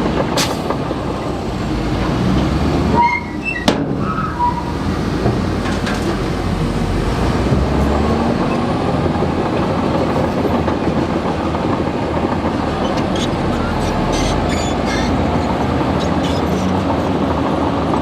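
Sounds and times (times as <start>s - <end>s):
bulldozer diesel engine rumble: 0.0s - 18.0s
sharp metal clank: 0.4s - 0.7s
brief squeaks: 3.0s - 4.8s, 12.8s - 17.1s.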